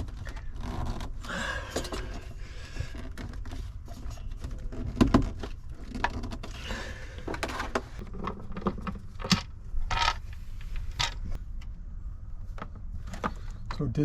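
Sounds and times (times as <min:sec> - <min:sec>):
steady low rumble: 0:06.5 - 0:14.0.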